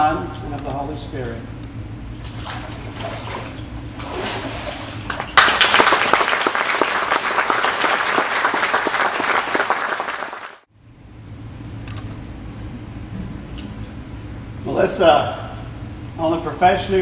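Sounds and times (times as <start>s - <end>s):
congregation applauding: 5.1s - 10.7s.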